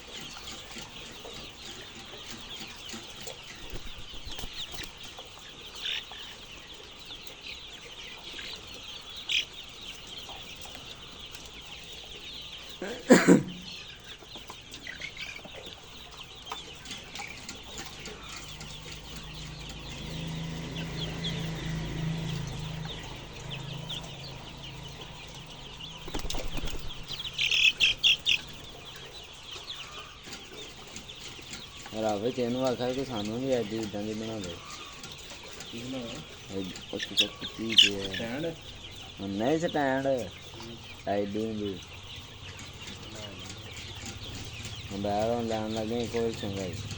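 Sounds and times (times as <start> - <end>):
chickens clucking: 0.0 - 46.9
wings flapping: 26.0 - 28.6.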